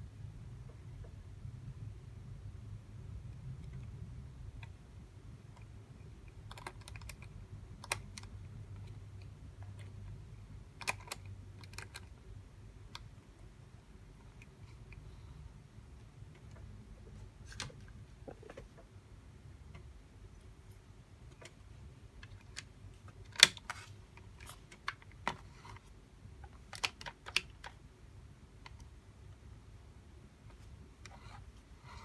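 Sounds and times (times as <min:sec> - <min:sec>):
plastic parts clicking: 0:06.3 - 0:10.0, 0:10.8 - 0:12.2, 0:22.2 - 0:27.8.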